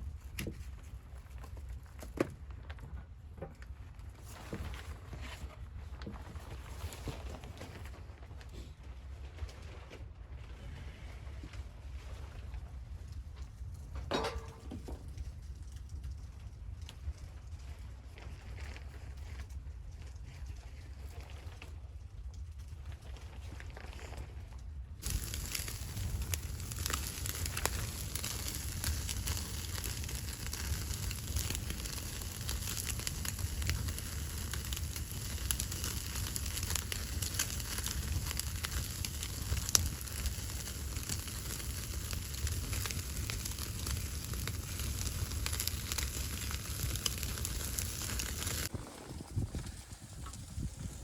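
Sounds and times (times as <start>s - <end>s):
wood fire crackling and popping: 13.5s - 17.8s, 25.0s - 51.0s
steady hiss: 25.0s - 48.8s.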